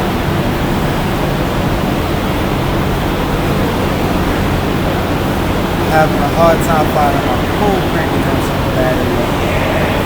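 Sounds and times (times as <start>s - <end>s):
loud rushing noise: 3.4s - 10.0s.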